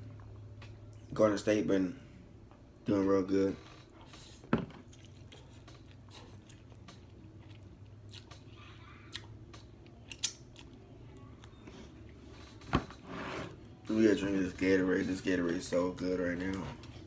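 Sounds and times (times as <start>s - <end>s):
faint low hum: 0.0s - 17.0s
chewing with crunchy clicks: 4.0s - 12.2s.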